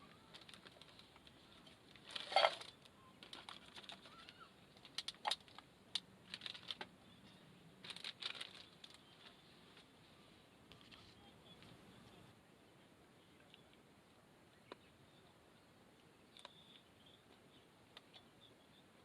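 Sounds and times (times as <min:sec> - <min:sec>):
objects clattering: 0:02.0 - 0:04.2.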